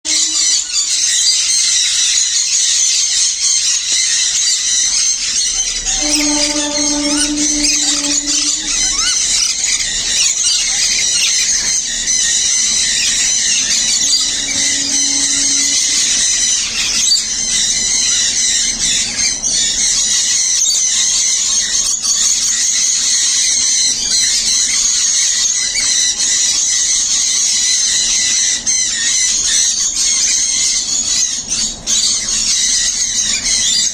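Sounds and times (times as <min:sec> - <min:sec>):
lower steady bird call: 0:05.5 - 0:10.1.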